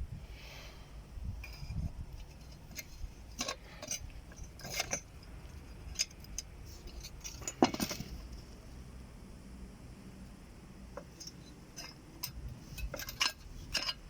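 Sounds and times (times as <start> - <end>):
light clinks and clicks: 1.4 - 8.5, 11.0 - 14.0.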